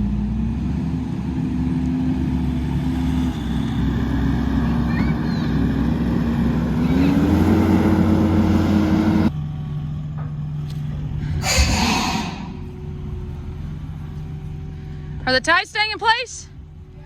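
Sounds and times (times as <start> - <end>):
skid steer engine running: 0.0 - 15.5
brief hiss: 11.4 - 12.6.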